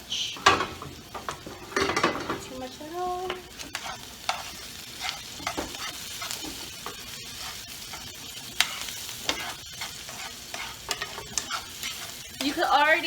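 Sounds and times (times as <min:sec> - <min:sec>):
vegetables sizzling in a frying pan: 0:00.0 - 0:13.0
utensil scraping against a pan: 0:03.6 - 0:12.6.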